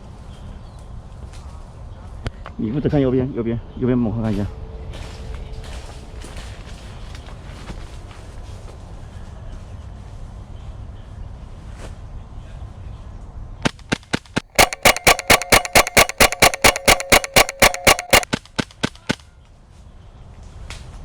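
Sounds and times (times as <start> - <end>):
airsoft gun firing: 14.5 - 18.2.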